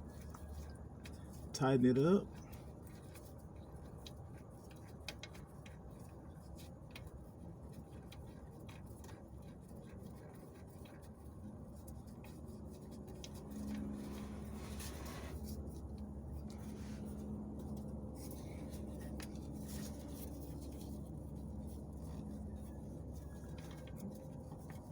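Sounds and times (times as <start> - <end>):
low steady hum: 0.0 - 24.9.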